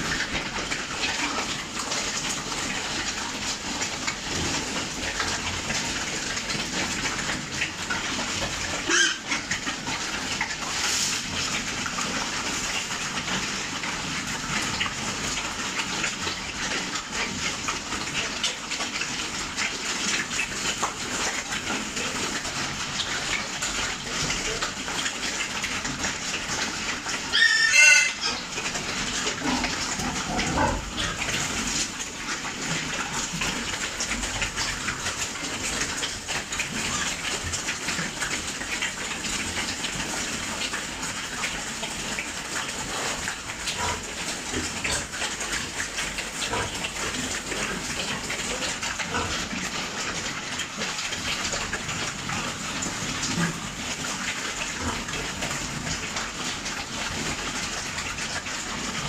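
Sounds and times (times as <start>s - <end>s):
rushing water: 0.0s - 59.0s
pig squealing: 8.8s - 9.5s, 27.2s - 28.5s.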